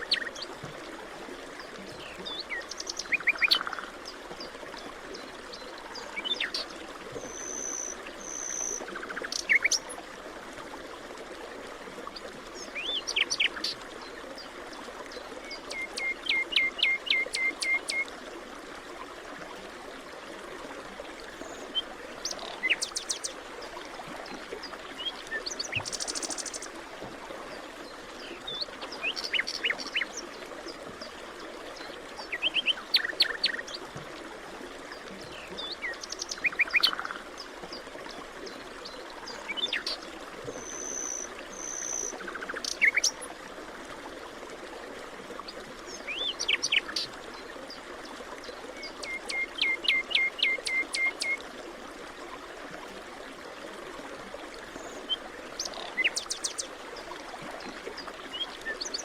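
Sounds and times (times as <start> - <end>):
songbirds chirping: 1.6 - 10.0.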